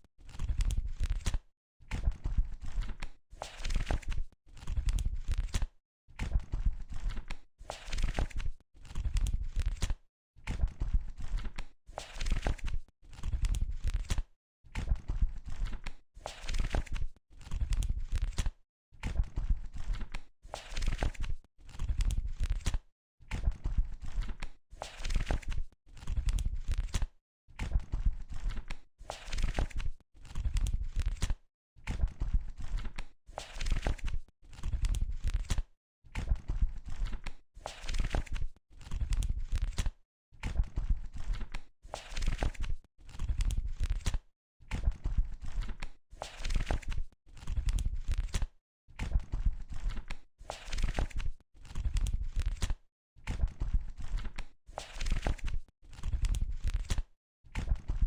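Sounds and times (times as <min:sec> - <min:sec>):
book pages turning: 0:20.6 - 0:21.8, 0:24.9 - 0:26.1, 0:29.2 - 0:31.3, 0:33.4 - 0:35.6, 0:37.0 - 0:39.9, 0:41.2 - 0:44.2, 0:45.5 - 0:48.5, 0:49.7 - 0:52.8, 0:54.0 - 0:57.0.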